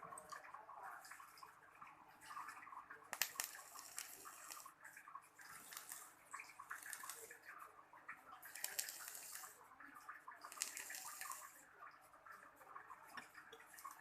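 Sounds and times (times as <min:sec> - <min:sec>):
coil sizzling and crackling: 0:00.0 - 0:14.0.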